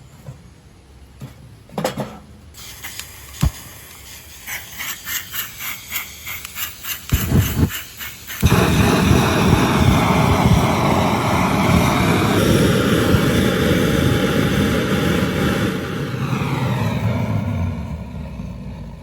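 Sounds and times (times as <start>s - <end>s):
engine running: 4.8s - 19.0s.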